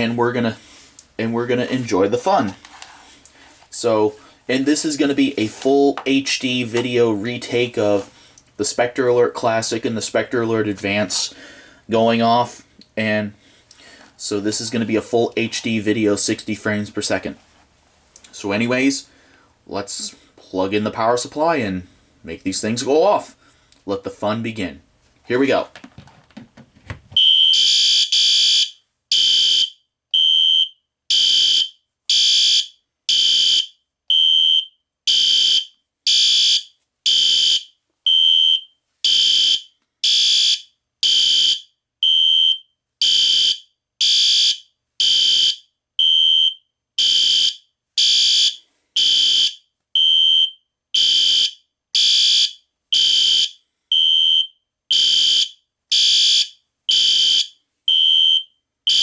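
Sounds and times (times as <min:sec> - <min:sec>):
fire alarm horns blasting: 0:27.2 - 0:59.0.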